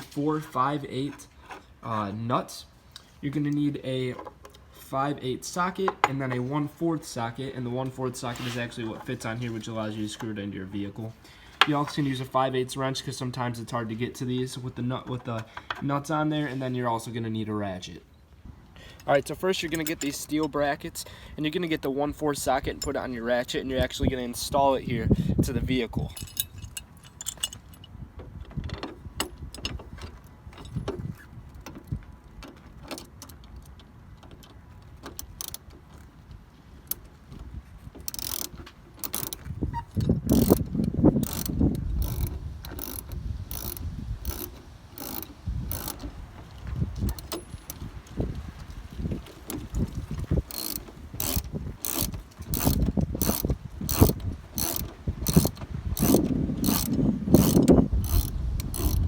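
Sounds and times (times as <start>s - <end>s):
hand ratchet clicking: 35.1s - 35.7s, 38.0s - 46.1s, 47.0s - 47.9s, 50.4s - 59.0s.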